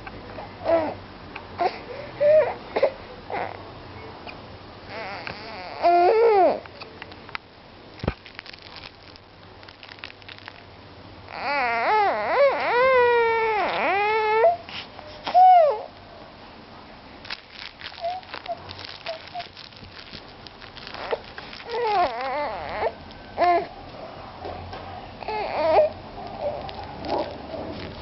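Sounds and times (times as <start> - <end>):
child whining cries: 0.4 - 1.0, 4.9 - 6.7, 11.3 - 14.6, 15.3 - 15.9, 21.0 - 23.7, 25.2 - 26.6.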